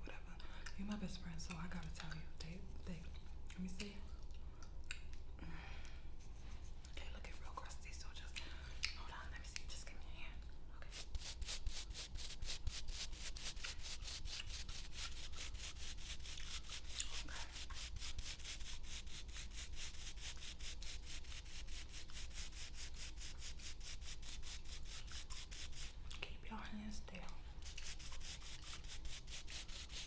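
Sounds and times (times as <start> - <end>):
nail being filed: 10.9 - 25.9, 27.6 - 30.0.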